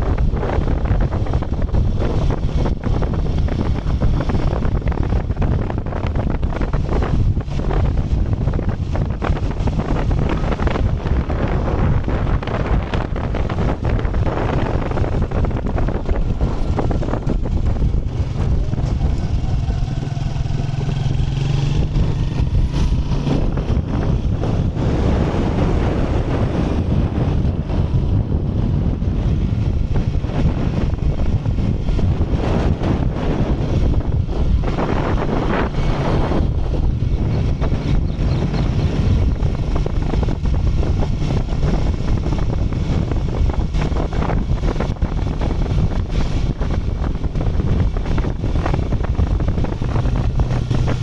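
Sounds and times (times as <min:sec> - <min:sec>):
motorcycle engine running: 0:00.0 - 0:51.0
wind buffeting microphone: 0:00.0 - 0:51.0.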